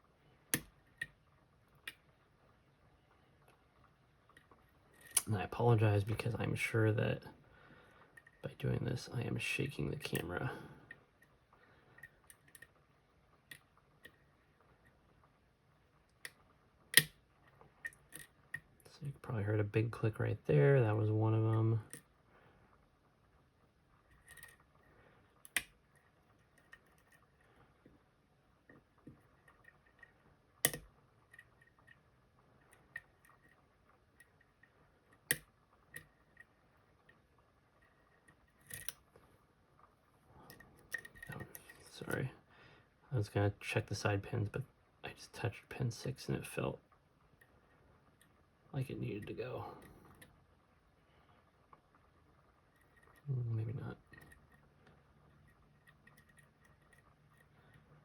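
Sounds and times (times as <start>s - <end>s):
lock pick clicking in lock: 30.6s - 30.9s, 38.6s - 39.0s.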